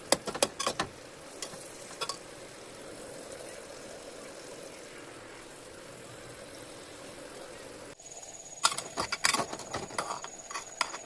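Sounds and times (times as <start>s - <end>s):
food sizzling in a pan: 1.0s - 9.1s.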